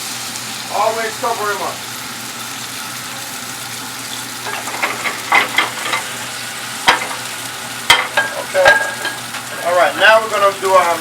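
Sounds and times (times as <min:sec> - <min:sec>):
food sizzling in a pan: 0:00.0 - 0:11.0
cookware clattering: 0:04.4 - 0:06.2, 0:06.8 - 0:07.3, 0:07.9 - 0:09.6.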